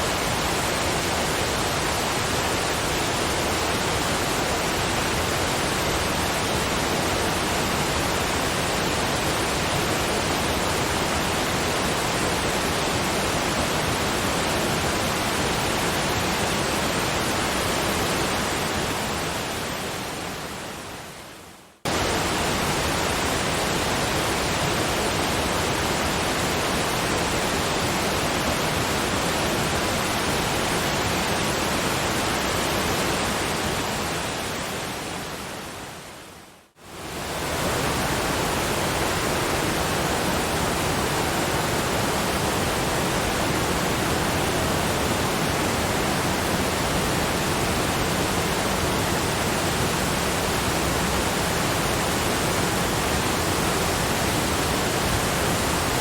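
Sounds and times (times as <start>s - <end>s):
waterfall rushing: 21.9s - 36.0s, 36.9s - 56.0s.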